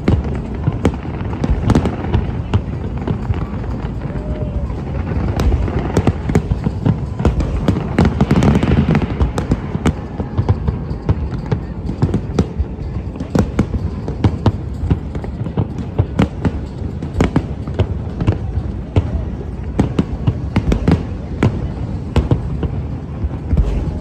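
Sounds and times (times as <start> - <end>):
fireworks bangs and cracks: 0.0 - 24.0.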